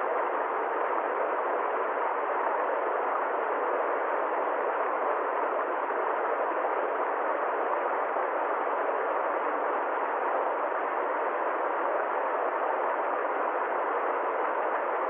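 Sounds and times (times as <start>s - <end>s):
steady muffled hiss: 0.0s - 15.0s.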